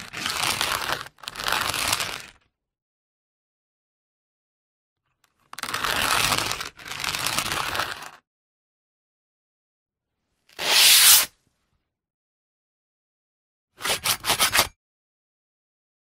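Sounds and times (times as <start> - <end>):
sandpaper scraping strokes: 10.6 - 11.3.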